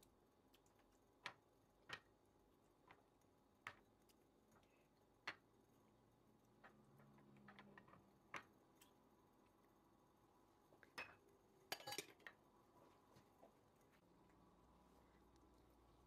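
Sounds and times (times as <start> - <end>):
kitchenware clinking: 10.8 - 12.4.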